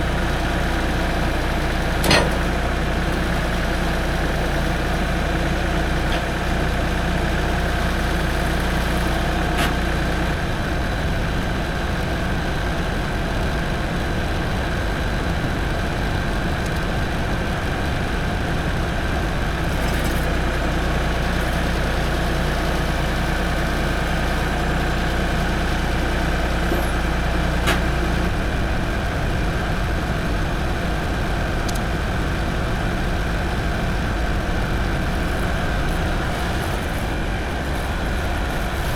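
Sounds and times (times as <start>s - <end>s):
tractor engine running: 0.0s - 38.9s
sharp clanks: 2.0s - 2.5s.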